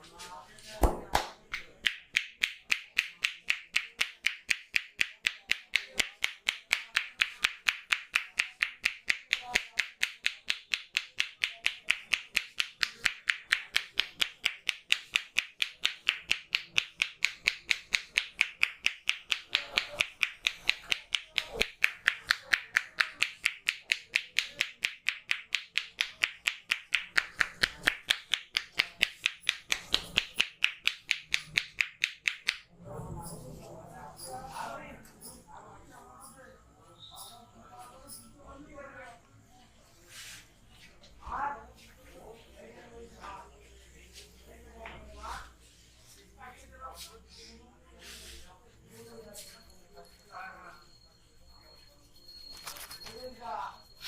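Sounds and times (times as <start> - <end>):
hands slapping and tapping head: 0.6 - 32.7.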